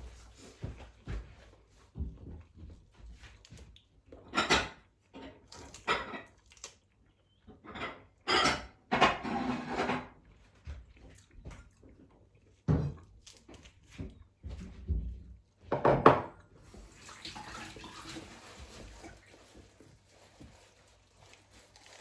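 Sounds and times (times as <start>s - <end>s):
dishes and utensils clattering: 4.2s - 6.4s, 7.5s - 10.2s, 15.7s - 16.4s.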